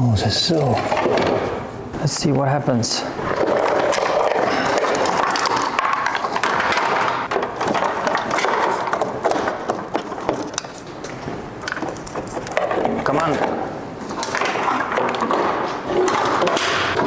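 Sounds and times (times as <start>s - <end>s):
wiring harness scraping and rustling: 3.2s - 17.0s.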